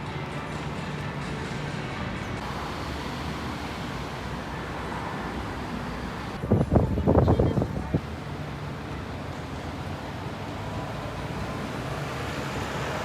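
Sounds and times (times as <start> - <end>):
city street traffic hum: 0.0 - 13.0.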